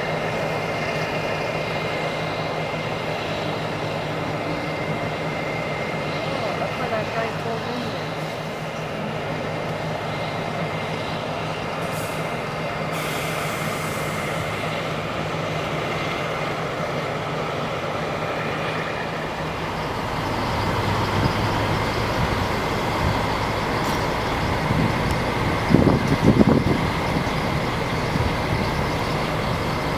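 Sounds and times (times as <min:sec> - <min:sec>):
diesel engines idling: 0:00.0 - 0:29.9
short hiss: 0:11.8 - 0:14.6
deep rumble: 0:19.2 - 0:29.9.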